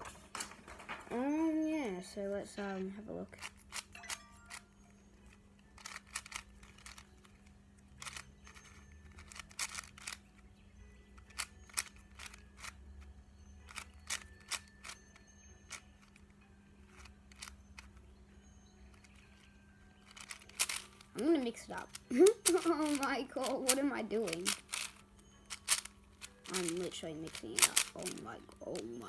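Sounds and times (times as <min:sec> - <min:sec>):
sharp plastic clicks and taps: 0:24.4 - 0:25.0.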